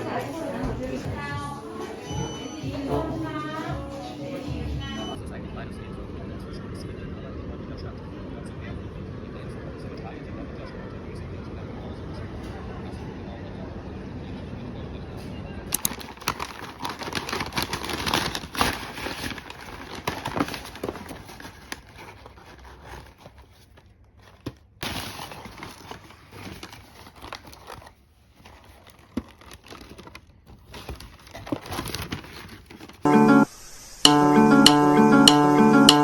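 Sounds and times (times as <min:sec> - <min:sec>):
rustling and crinkling handling noise: 0:15.7 - 0:33.1.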